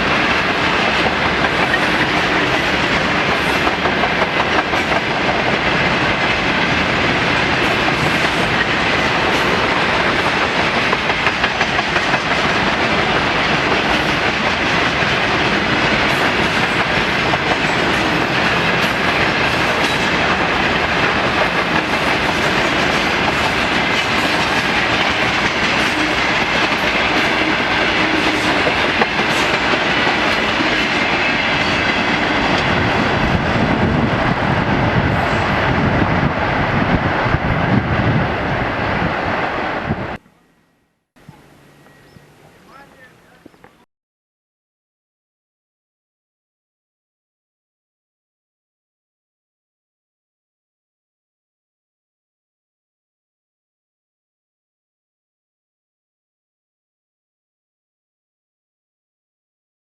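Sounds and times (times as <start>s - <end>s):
train wheels clattering over rail joints: 0.2s - 5.5s, 6.2s - 32.9s.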